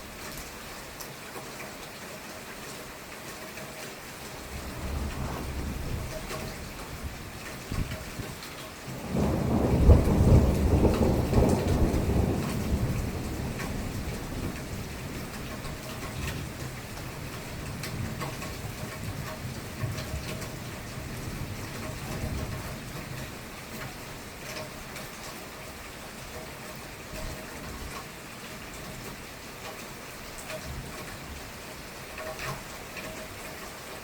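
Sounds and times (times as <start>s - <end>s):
steady rain: 0.0s - 34.0s
thunder rumbling: 4.4s - 8.3s, 8.9s - 22.7s.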